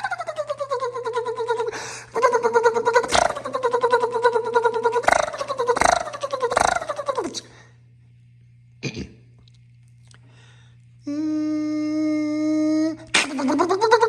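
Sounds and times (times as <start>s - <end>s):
person imitating car cranking: 0.0s - 7.5s, 11.1s - 14.0s
person humming: 0.0s - 7.7s, 11.0s - 14.0s
cough-like vocal sound: 8.8s - 9.2s.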